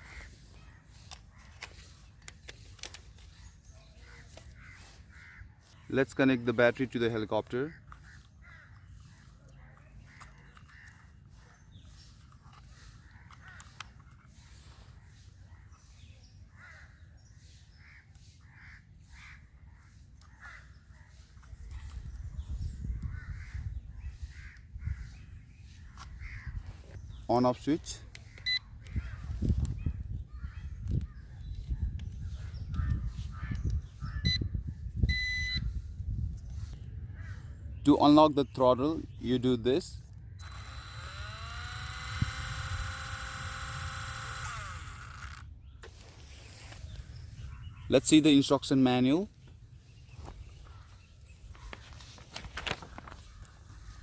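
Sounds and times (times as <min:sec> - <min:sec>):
bird calls: 0:00.0 - 0:35.6
electric motors whining: 0:40.4 - 0:45.5.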